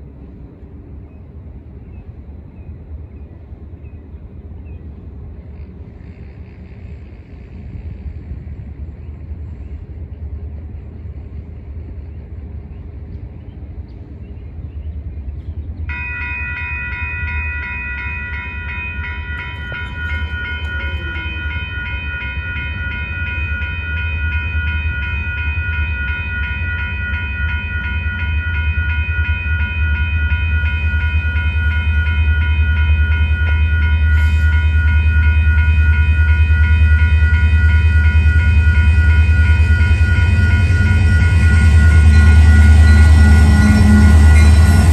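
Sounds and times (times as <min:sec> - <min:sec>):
diesel locomotives rumbling: 0:00.0 - 0:44.9
railroad crossing bell ringing: 0:15.9 - 0:44.9.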